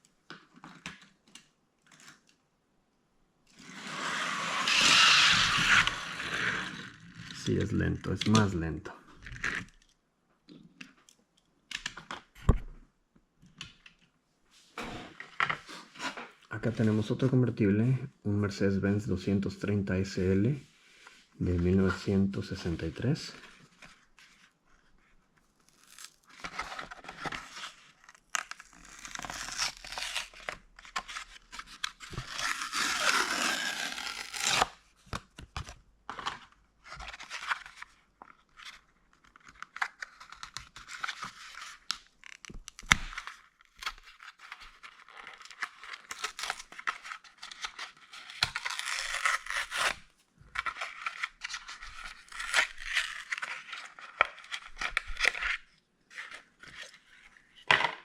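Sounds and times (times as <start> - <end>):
cardboard and plastic tearing: 3.6 - 7.4, 25.6 - 58.0.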